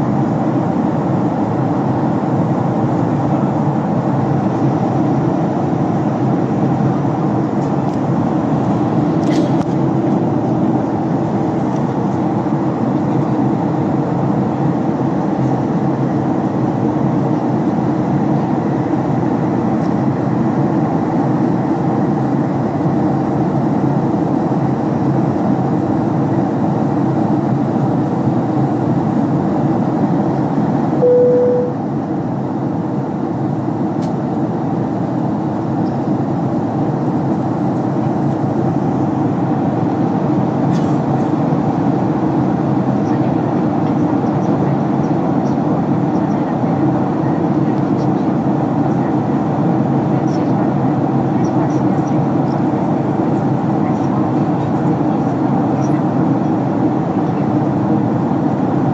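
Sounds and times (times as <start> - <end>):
aircraft cabin engine roar: 0.0 - 58.9
short steady tone: 31.0 - 31.8.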